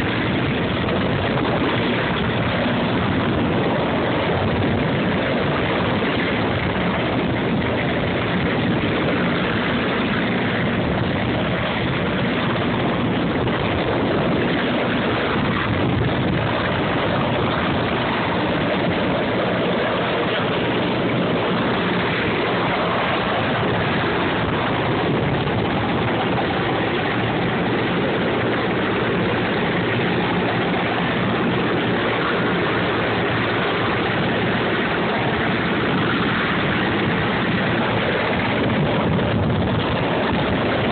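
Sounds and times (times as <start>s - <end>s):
helicopter engine and rotor: 0.0s - 40.9s.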